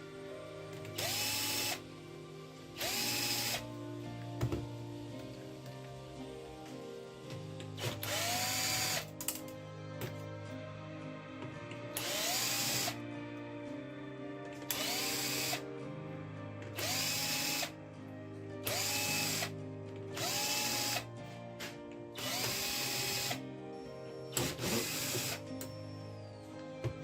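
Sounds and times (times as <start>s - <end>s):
electric screwdriver whining: 0.9s - 1.8s, 2.8s - 3.7s, 7.8s - 9.1s, 12.0s - 13.0s, 14.7s - 15.6s, 16.8s - 17.7s, 18.6s - 19.5s, 20.2s - 21.1s, 22.2s - 23.4s, 24.3s - 25.8s.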